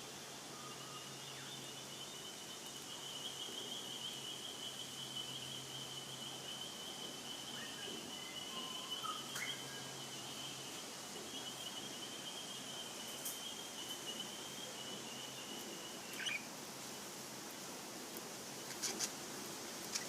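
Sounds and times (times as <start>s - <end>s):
budgerigars chirping: 16.1s - 16.4s.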